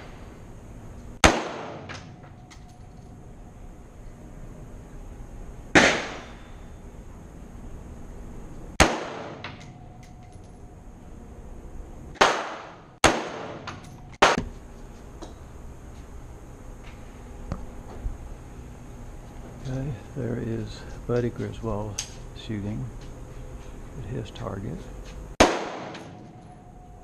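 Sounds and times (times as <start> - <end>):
gunshots with echo: 1.2 - 2.0, 5.8 - 6.4, 8.8 - 9.5, 12.2 - 14.4, 25.4 - 26.3.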